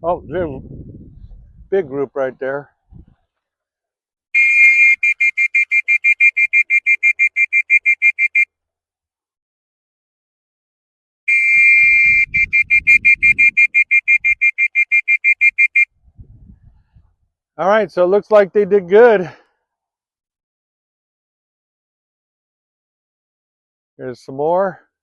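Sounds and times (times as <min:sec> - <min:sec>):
high-pitched whistle toots: 0:04.4 - 0:08.5, 0:11.3 - 0:15.9.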